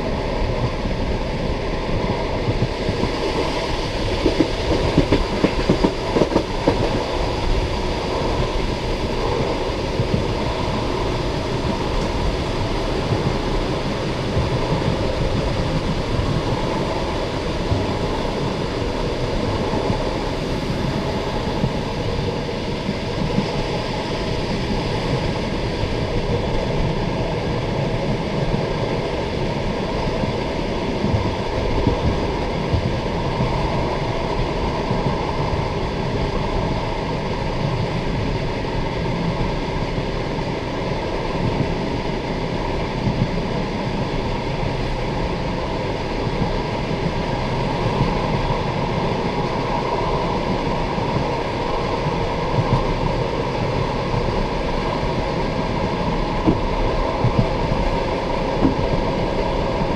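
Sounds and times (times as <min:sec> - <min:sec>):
train wheels rumbling on rails: 0:00.0 - 0:59.9
train wheels clattering: 0:02.1 - 0:17.0.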